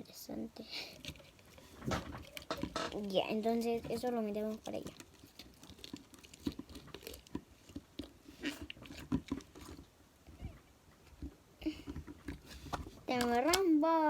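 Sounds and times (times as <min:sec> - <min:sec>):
slime and plastic containers clicking: 0:11.2 - 0:13.7.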